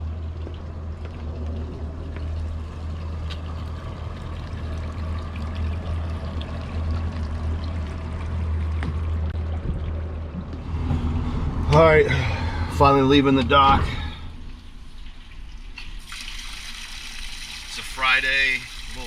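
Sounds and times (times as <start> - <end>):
boat engine idling: 0.0 - 10.8.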